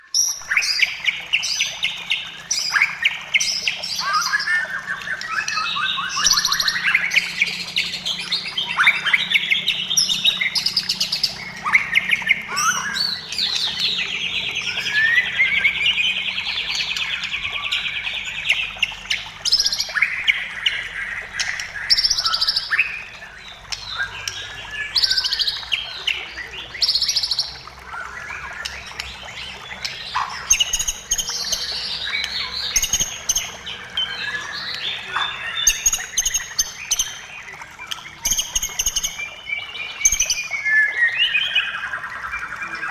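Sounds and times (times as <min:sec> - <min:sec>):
bird song with whistles and trills: 0:00.0 - 0:42.9.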